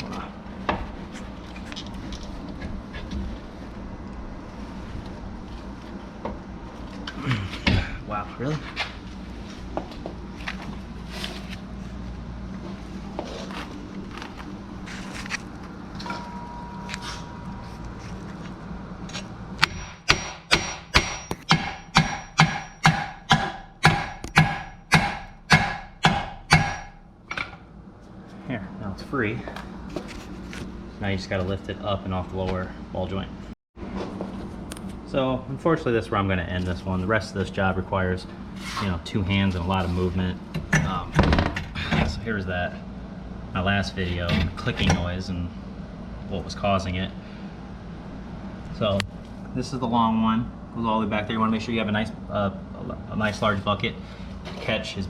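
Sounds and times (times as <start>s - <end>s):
low workshop rumble: 0.0s - 55.0s.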